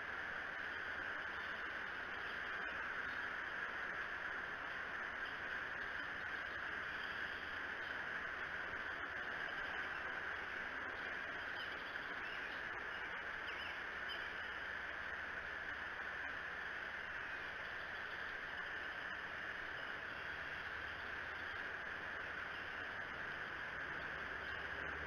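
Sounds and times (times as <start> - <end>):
microphone hiss: 0.0 - 25.0.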